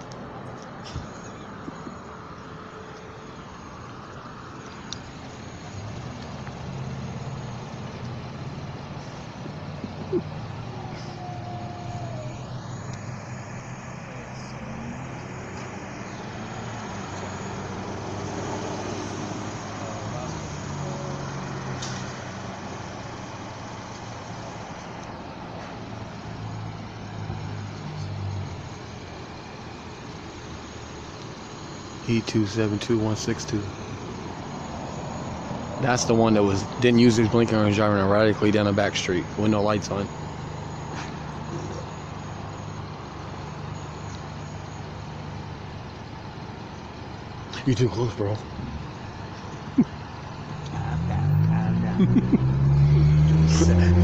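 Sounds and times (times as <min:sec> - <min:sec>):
road noise: 0:00.0 - 0:54.0
street noise: 0:00.0 - 0:54.0
vehicle engine running: 0:00.0 - 0:54.0.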